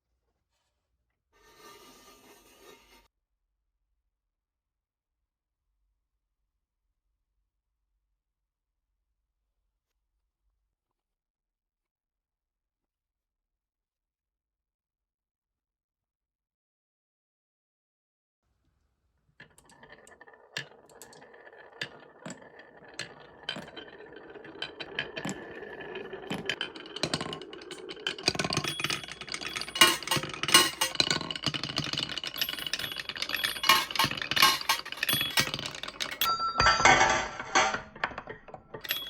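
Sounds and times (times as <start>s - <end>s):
marbles clattering on wooden tracks: 19.4s - 39.0s.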